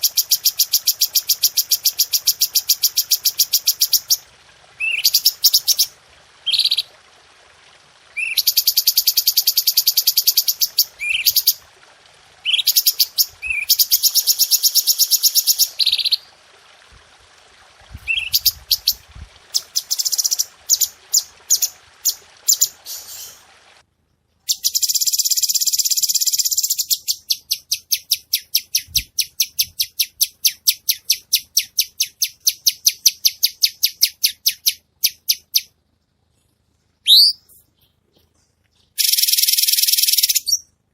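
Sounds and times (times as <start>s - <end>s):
songbird singing rapid high notes: 8.2s - 11.6s, 12.4s - 16.3s, 39.0s - 40.7s.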